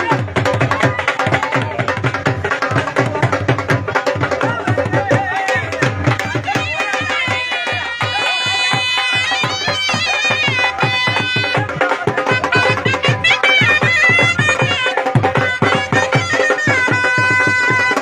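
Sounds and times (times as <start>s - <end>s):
fast hand drum rhythm: 0.0s - 18.0s
reedy wind instrument melody: 7.4s - 18.0s.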